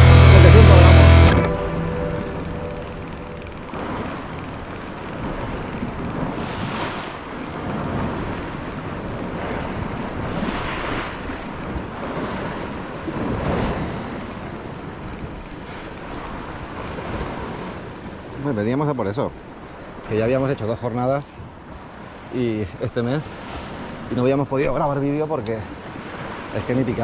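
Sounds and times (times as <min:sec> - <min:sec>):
sea waves washing: 0:00.0 - 0:27.0
wind buffeting microphone: 0:01.5 - 0:18.4.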